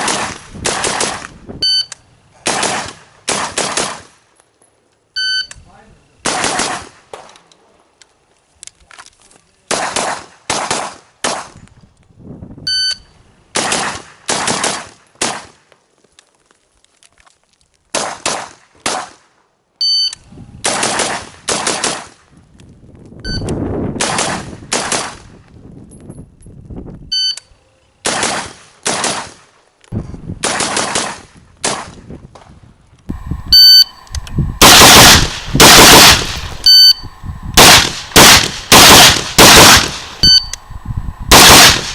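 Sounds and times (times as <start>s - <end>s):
rifle shots: 0.0s - 1.3s, 2.5s - 4.1s, 6.2s - 7.0s, 13.6s - 15.6s, 20.7s - 22.1s, 30.4s - 31.9s, 34.6s - 40.6s, 41.3s - 41.9s
short electronic beeps: 1.6s - 2.0s, 5.2s - 5.5s, 12.7s - 13.0s, 19.8s - 20.2s, 23.2s - 23.5s, 27.1s - 27.4s, 33.5s - 35.0s, 35.6s - 37.8s, 40.2s - 41.7s.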